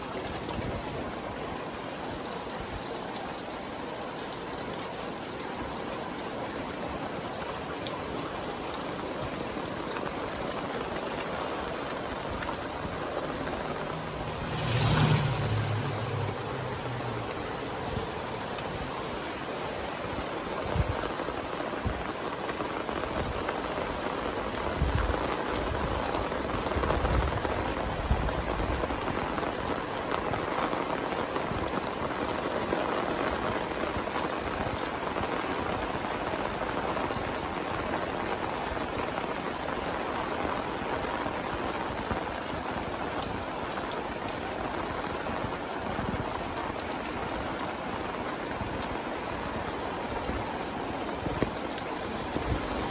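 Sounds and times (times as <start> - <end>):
heavy rain pouring: 0.0 - 52.9
low rumbles: 13.0 - 18.4.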